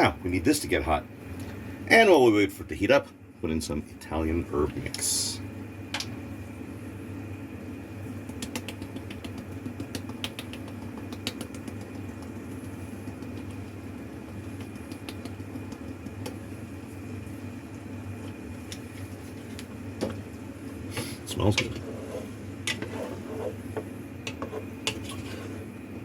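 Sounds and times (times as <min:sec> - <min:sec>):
steady low hum: 0:00.0 - 0:26.0
sauce ticking and popping in pan: 0:08.2 - 0:16.6.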